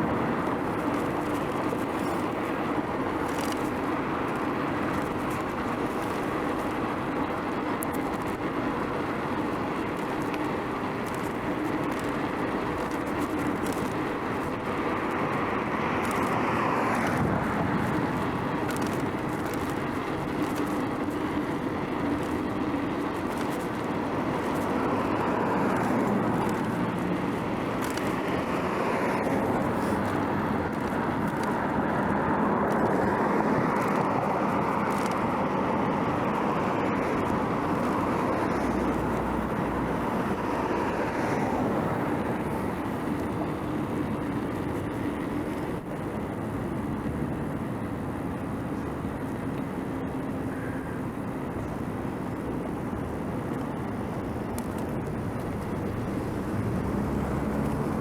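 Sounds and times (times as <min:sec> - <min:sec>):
motor traffic passing: 0:00.0 - 0:58.0
tyre and wind noise: 0:00.0 - 0:58.0.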